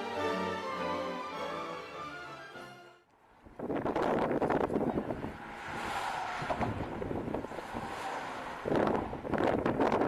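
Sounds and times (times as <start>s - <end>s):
instrumental background music: 0.0s - 3.1s.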